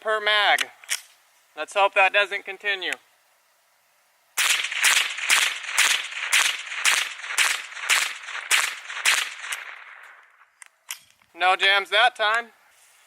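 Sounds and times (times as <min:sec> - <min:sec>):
rifle shots with echo: 0:04.4 - 0:10.5.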